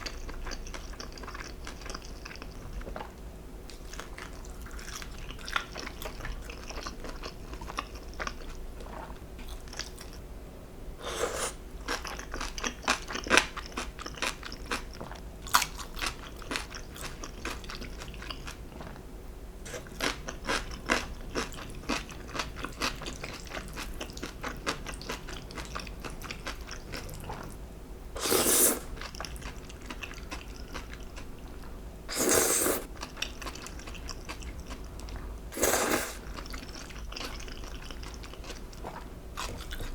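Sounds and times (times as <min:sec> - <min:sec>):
crunchy chewing: 0:28.2 - 0:39.9.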